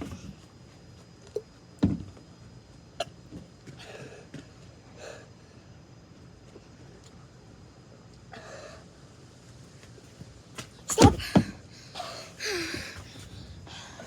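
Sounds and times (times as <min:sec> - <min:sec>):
breaths: 0:10.9 - 0:14.0.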